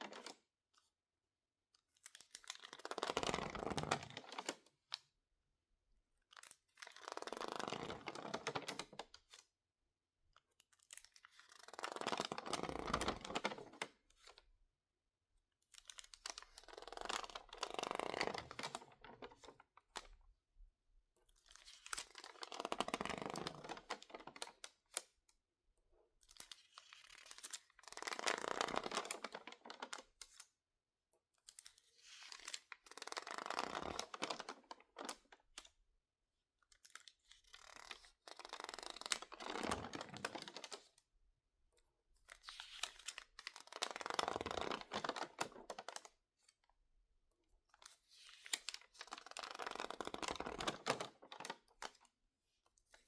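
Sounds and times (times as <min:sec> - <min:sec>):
stiff paper pages crinkling: 0:26.4 - 0:30.4, 0:42.4 - 0:46.1, 0:47.8 - 0:52.0.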